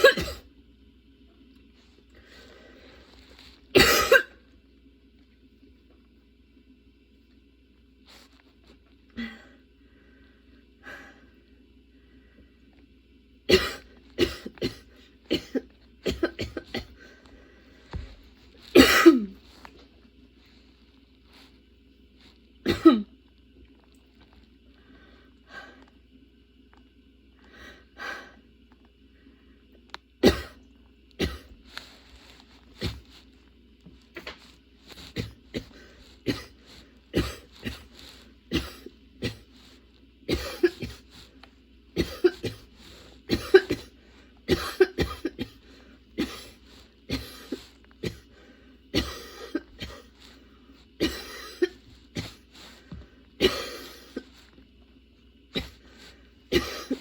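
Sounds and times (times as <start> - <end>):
woman coughing: 0.0 - 0.5, 3.7 - 4.4, 13.5 - 17.0, 18.7 - 19.4, 22.6 - 23.2, 30.2 - 30.6, 31.2 - 31.5, 35.1 - 37.9, 38.5 - 39.5, 40.3 - 41.0, 42.0 - 42.7, 43.3 - 45.6, 46.2 - 48.3, 48.9 - 50.1, 51.0 - 52.4, 53.4 - 54.3, 56.5 - 57.0.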